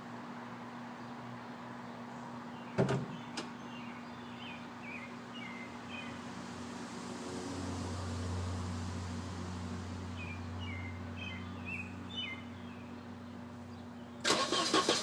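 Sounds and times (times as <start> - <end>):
birds chirping: 0.8 - 6.4, 10.0 - 14.8.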